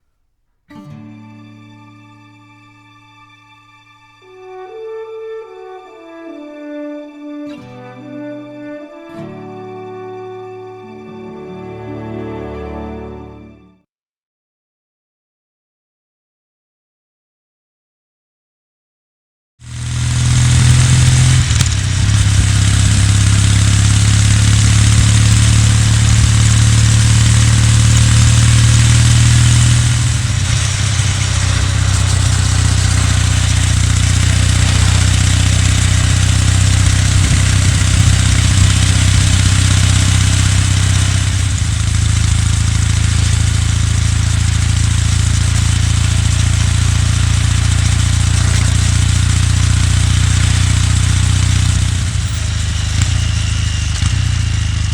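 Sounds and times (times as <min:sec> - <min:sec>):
motorcycle engine running: 0:19.6 - 0:54.9
wind and road noise: 0:19.6 - 0:54.9.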